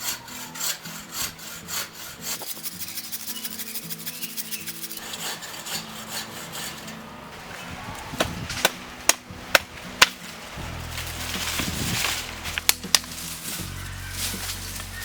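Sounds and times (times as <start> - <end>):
tool rasping wood: 0.0 - 7.1
faint background music: 0.0 - 15.0.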